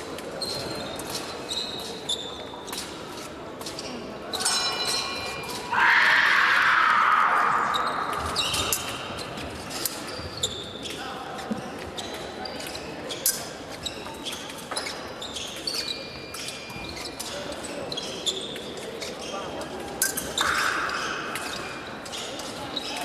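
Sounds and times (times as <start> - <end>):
shoes squeaking: 0.3 - 5.6, 7.7 - 20.5.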